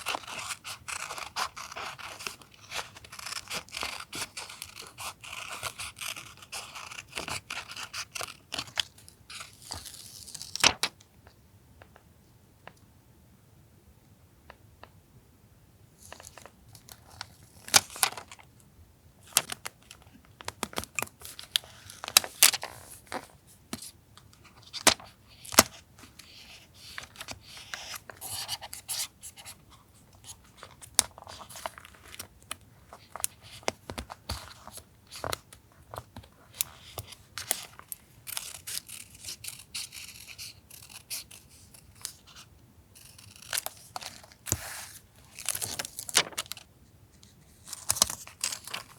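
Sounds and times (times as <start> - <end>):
paper rustling and tearing: 0.0 - 10.9, 43.0 - 46.6.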